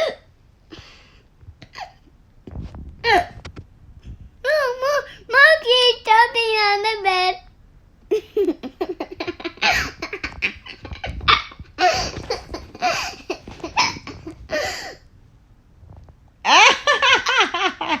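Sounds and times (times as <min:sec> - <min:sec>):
baby laughing: 0:08.1 - 0:14.9, 0:16.5 - 0:18.0.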